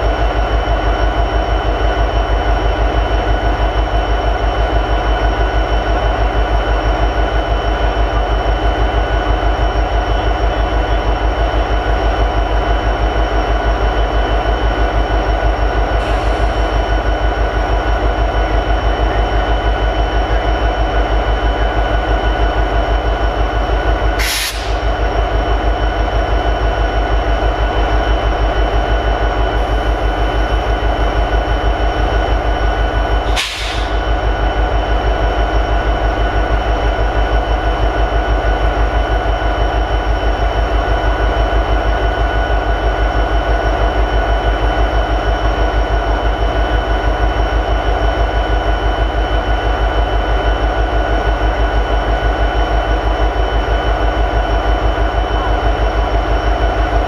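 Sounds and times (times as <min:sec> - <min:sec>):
steady whine: 0:15.6 - 0:40.8
locomotive diesel engine idling: 0:21.6 - 0:39.4.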